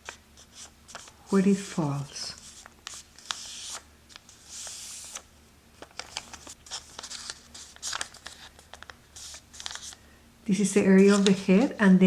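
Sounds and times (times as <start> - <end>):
paper rustling and crinkling: 0.0 - 10.0, 11.0 - 11.8
small sharp paper clicks: 2.6 - 10.0.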